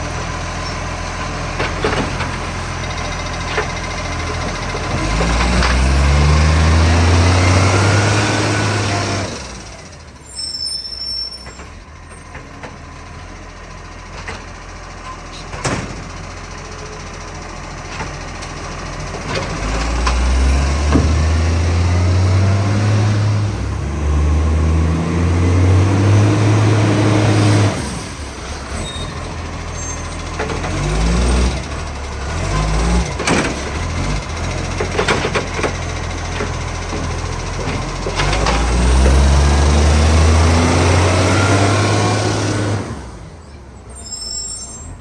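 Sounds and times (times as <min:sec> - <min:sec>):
diesel truck engine revving: 0:00.0 - 0:11.8, 0:15.7 - 0:44.0
clanks: 0:28.4 - 0:39.2.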